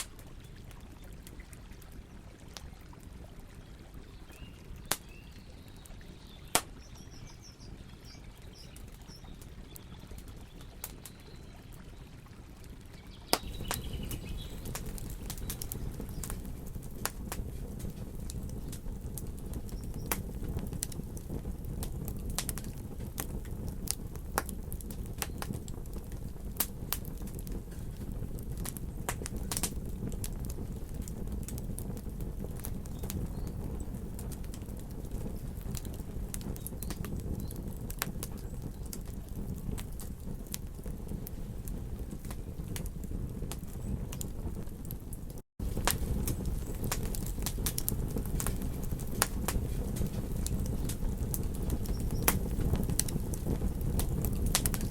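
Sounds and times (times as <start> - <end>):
campfire crackling and popping: 0.0 - 54.9
low rush of fire: 0.0 - 54.9
faint birdsong: 3.2 - 21.3, 24.2 - 29.6, 30.7 - 42.8, 46.0 - 53.7.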